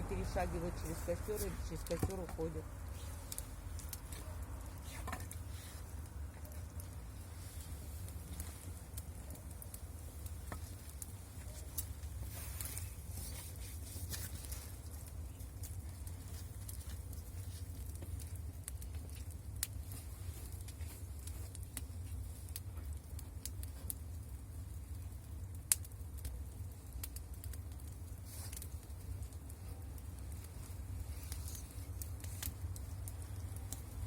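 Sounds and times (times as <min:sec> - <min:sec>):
bonfire crackling: 0:00.0 - 0:34.0.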